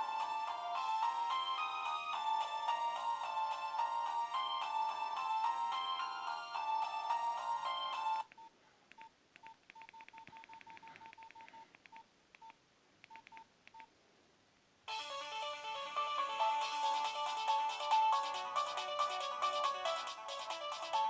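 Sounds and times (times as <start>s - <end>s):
phone ringtone melody: 0.0s - 8.3s
phone keypad beeps: 8.2s - 13.9s.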